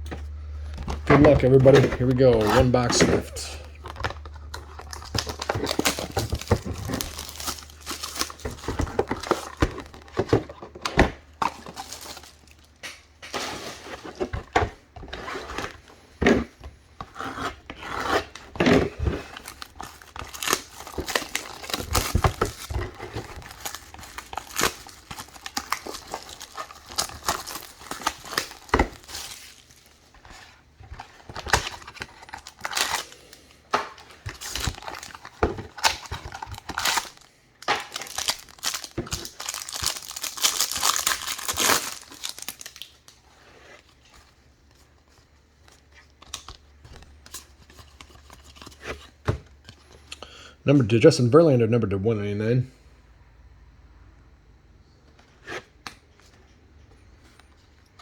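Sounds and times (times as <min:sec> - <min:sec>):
cards being handled: 0:00.1 - 0:44.3
foil card packs tearing and crinkling: 0:00.5 - 0:44.4, 0:45.6 - 0:50.0.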